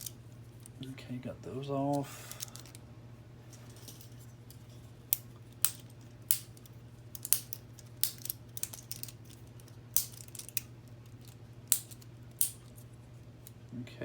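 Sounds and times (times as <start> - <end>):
steady low hum: 0.0 - 14.0
plastic pieces clicking and snapping: 5.1 - 12.6.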